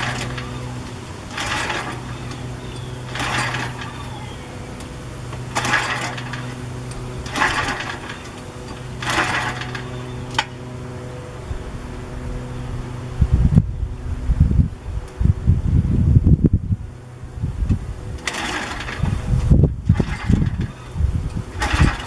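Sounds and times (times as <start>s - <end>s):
short noisy bursts: 0.0s - 13.2s, 18.1s - 22.0s
small electric motor humming: 0.0s - 16.5s, 17.2s - 22.0s.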